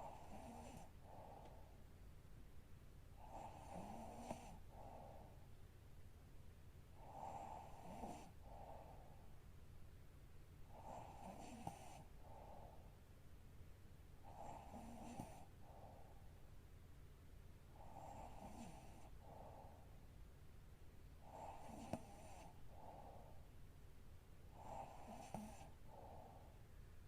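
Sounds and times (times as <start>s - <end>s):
woman snoring faintly: 24.6s - 25.8s.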